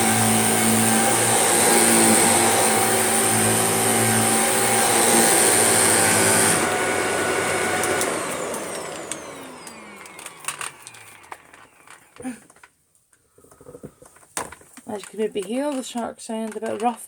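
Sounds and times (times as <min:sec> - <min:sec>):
vacuum cleaner whining: 0:00.0 - 0:12.6.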